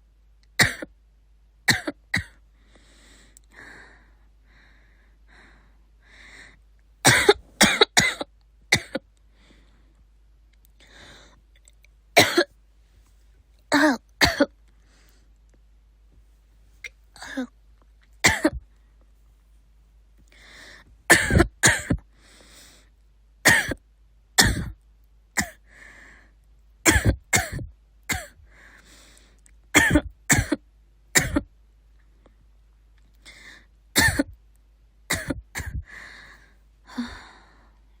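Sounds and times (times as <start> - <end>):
girl coughing: 0.6 - 0.9, 7.1 - 9.0, 12.2 - 12.5, 13.7 - 14.5, 17.2 - 17.5, 18.2 - 18.6, 21.1 - 22.0, 23.5 - 23.8, 24.4 - 24.8, 25.4 - 25.6, 26.9 - 28.4, 29.8 - 30.6, 31.2 - 31.5, 34.0 - 34.4, 35.1 - 35.8.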